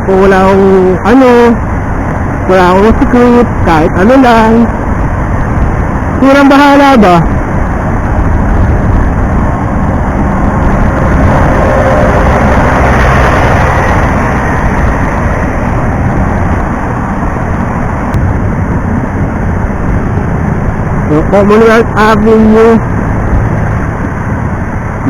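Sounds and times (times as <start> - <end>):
wind and road rushing: 0.0 - 25.0
motorcycle engine: 7.1 - 25.0.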